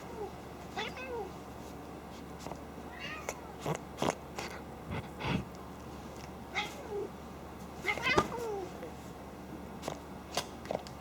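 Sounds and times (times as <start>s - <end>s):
cat crying: 2.9s - 3.6s
cat snorting: 3.3s - 5.5s.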